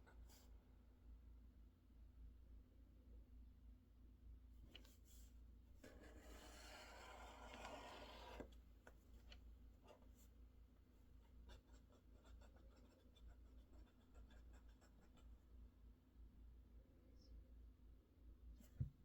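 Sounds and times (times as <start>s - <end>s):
scratchy rubbing: 5.8s - 8.5s.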